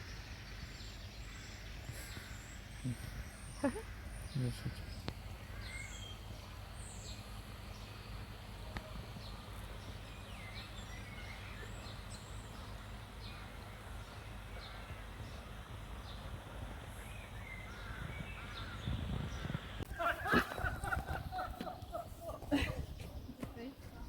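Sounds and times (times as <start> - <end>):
birds chirping: 0.0 - 24.0
low outdoor rumble: 0.0 - 24.0.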